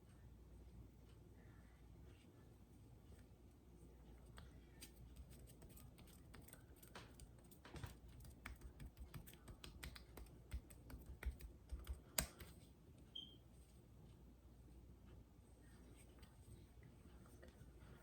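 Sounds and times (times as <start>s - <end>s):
soft clicks and taps of hands: 4.3s - 12.7s.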